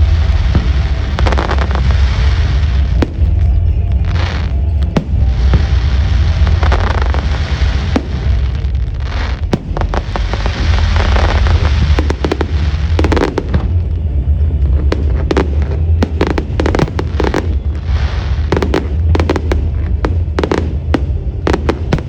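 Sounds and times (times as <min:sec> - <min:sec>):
fireworks bangs and crackles: 0:00.0 - 0:22.0
low rumble: 0:00.0 - 0:22.0.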